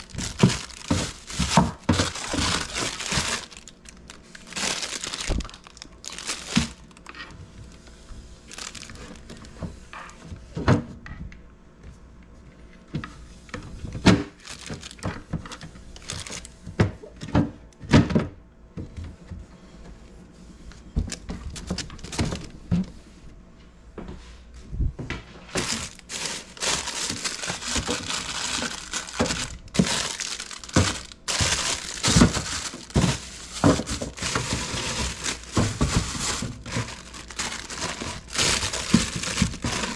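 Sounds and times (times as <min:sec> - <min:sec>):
plastic crinkling: 0:00.0 - 0:09.8, 0:14.3 - 0:16.6, 0:21.4 - 0:22.6, 0:25.6 - 0:39.9.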